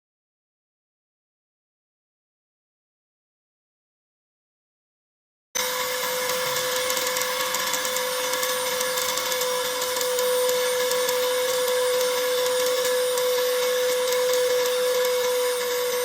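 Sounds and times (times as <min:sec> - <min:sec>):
vacuum cleaner fan motor whine: 0:05.6 - 0:16.0.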